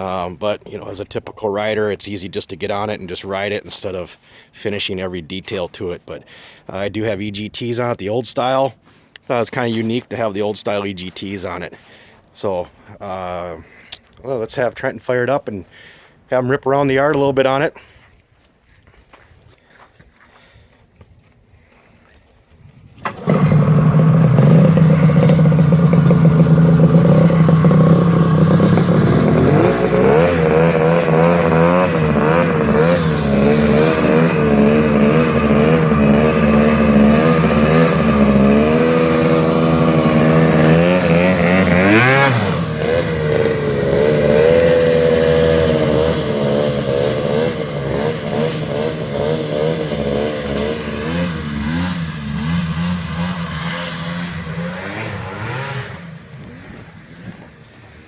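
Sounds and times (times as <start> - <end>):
snowmobile engine revving: 23.0 - 57.9.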